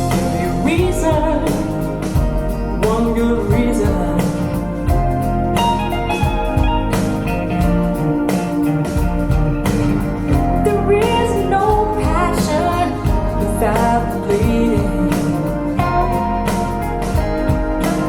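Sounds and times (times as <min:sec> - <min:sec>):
person singing: 0:00.0 - 0:02.2, 0:02.8 - 0:05.0, 0:09.7 - 0:16.5, 0:17.6 - 0:18.0
guitar: 0:00.0 - 0:18.0.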